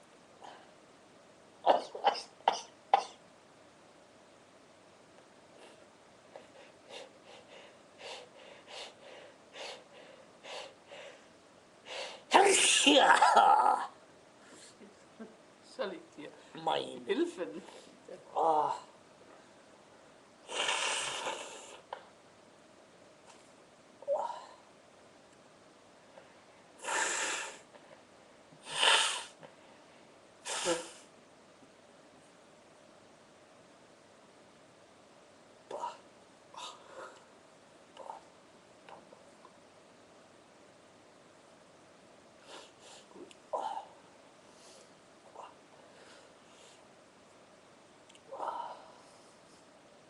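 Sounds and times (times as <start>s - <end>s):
person sneezing: 28.6s - 29.4s, 30.4s - 31.1s
person gasping breaths: 48.3s - 49.4s.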